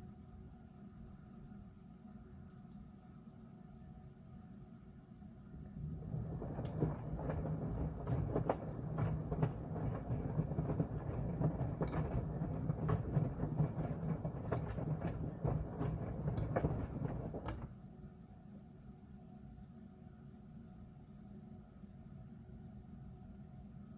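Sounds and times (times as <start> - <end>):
low hum: 5.4 - 17.8
washing machine drum rumbling: 5.8 - 17.7
knocks and clicks in drum: 6.1 - 17.7.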